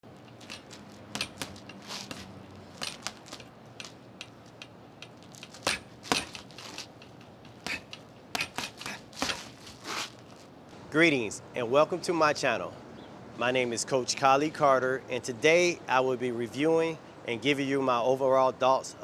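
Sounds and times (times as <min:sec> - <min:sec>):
sharp smacks and clicks: 0:00.0 - 0:10.2.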